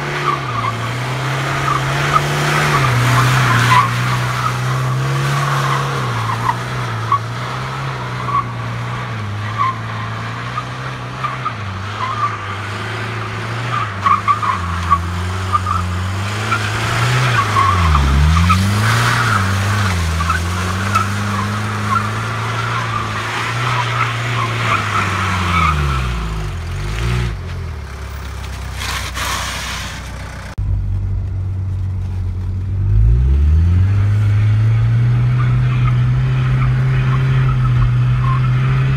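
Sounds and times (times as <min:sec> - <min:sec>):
diesel engine revving: 0:00.0 - 0:38.9
tyres skidding: 0:00.0 - 0:38.9.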